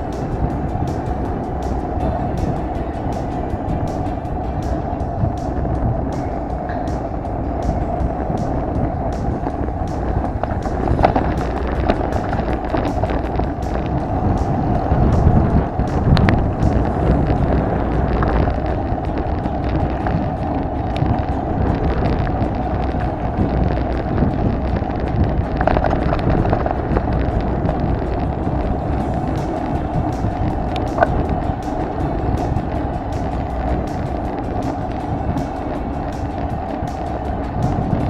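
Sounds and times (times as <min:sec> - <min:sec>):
off-road vehicle engine drone: 0:00.0 - 0:38.0.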